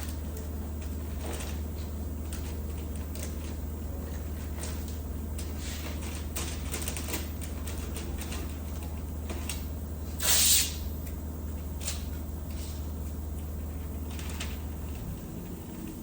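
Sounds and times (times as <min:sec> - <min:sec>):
loud hiss: 0:10.2 - 0:10.8.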